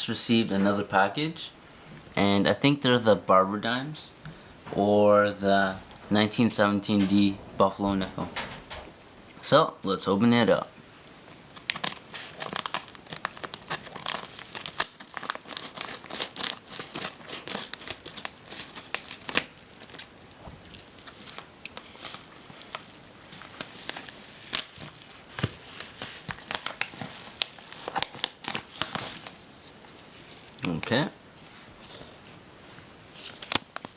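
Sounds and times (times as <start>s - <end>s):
packaging crinkling and tearing: 11.5s - 30.8s, 33.1s - 33.9s.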